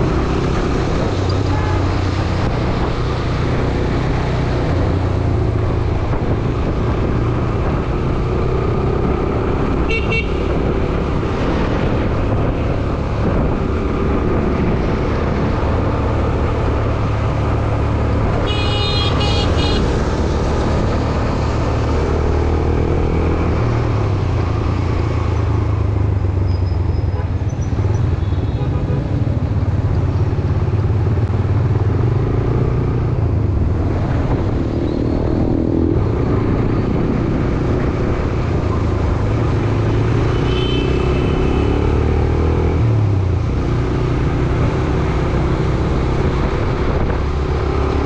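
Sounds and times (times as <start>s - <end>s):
road traffic: 0.0s - 48.0s
vehicle horn honking: 9.9s - 10.4s, 18.4s - 19.9s, 40.4s - 41.7s.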